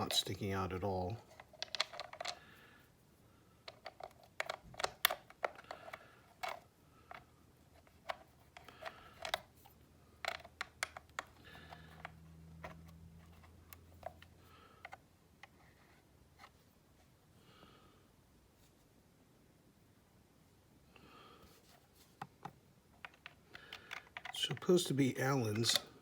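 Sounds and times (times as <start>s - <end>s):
faint low hum: 0.0s - 26.0s
small screws and plastic parts clicking: 1.2s - 2.5s, 3.6s - 15.8s, 22.2s - 24.8s, 25.6s - 25.9s.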